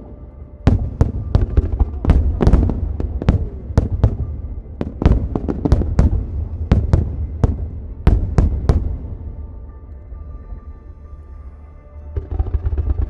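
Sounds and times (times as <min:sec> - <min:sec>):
deep firework booms: 0:00.7 - 0:09.5
fireworks cracking: 0:00.7 - 0:09.5.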